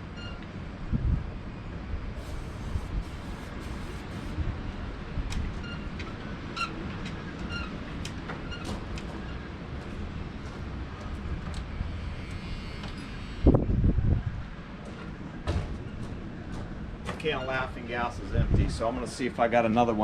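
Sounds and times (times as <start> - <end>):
truck engine cranking on starter: 2.2 - 4.4.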